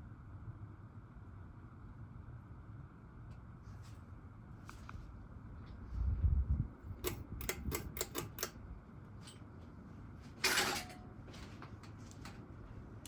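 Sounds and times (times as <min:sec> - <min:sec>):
ceiling fan humming: 0:00.0 - 0:13.0
sharp clicks: 0:07.0 - 0:08.6.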